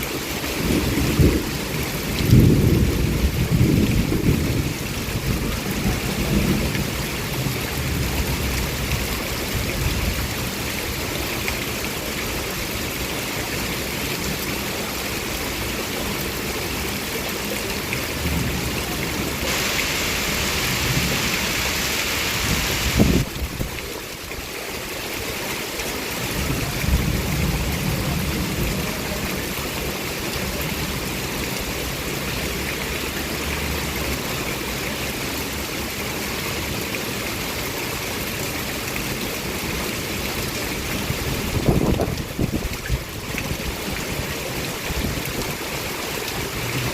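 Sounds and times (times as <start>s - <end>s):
heavy rain falling: 0.0s - 46.9s.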